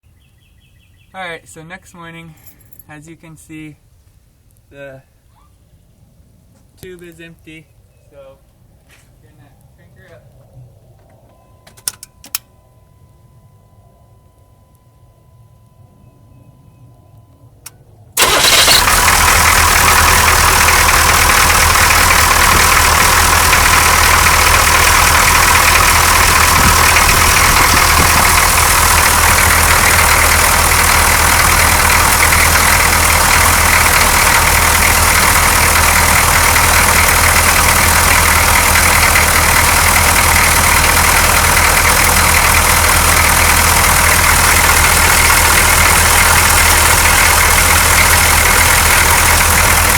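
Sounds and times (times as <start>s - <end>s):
diesel truck engine starting: 17.6s - 49.9s
truck engine idling: 17.6s - 49.9s.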